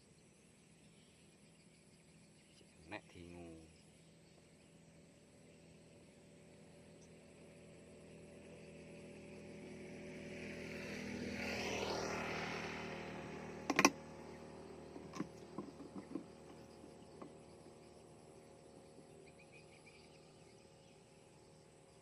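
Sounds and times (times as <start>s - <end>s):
vehicle engine passing by: 6.4s - 20.6s.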